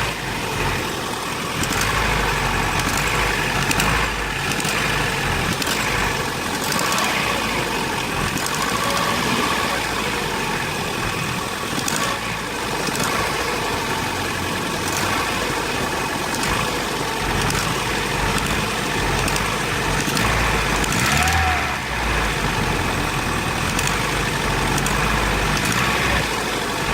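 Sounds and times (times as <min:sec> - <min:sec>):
car engine idling: 0:00.0 - 0:26.9
faint sharp clicks: 0:16.3 - 0:21.3, 0:23.6 - 0:26.3.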